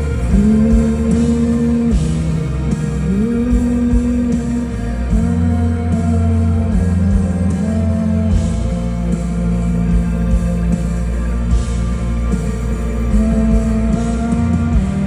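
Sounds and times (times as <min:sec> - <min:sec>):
bass: 0:00.0 - 0:15.0
guitar: 0:00.0 - 0:15.0
live band music: 0:00.0 - 0:15.0.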